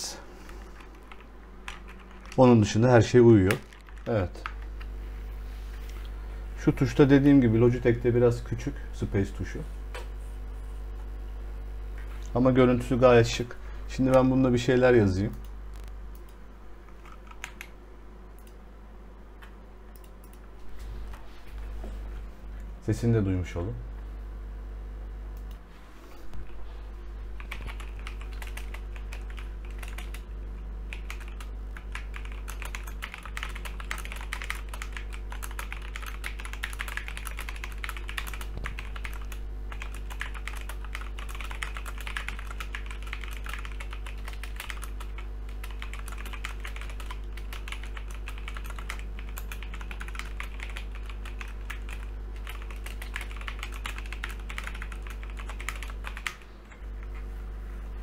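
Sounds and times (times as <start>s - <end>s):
mechanical keyboard typing: 0.8s - 2.5s, 17.0s - 17.7s, 27.4s - 30.3s, 30.9s - 56.4s.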